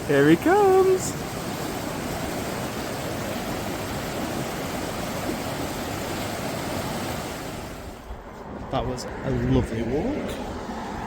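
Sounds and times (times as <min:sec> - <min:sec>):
river rushing: 0:00.0 - 0:08.1.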